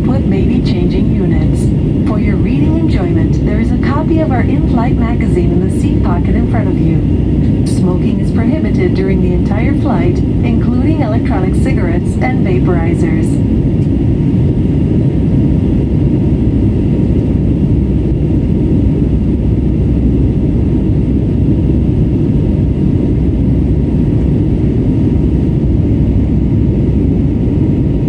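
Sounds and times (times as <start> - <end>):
airplane cabin rumble: 0.0 - 28.0.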